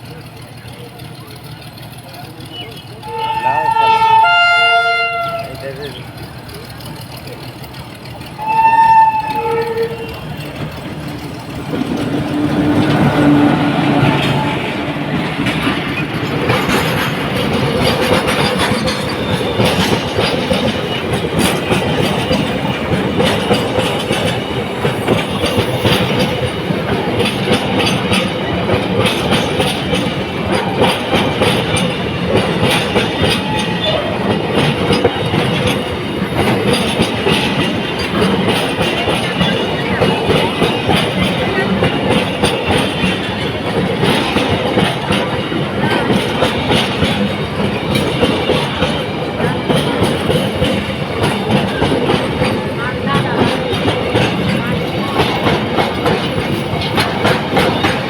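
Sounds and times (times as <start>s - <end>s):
train wheels clattering over joints: 0.0s - 58.0s.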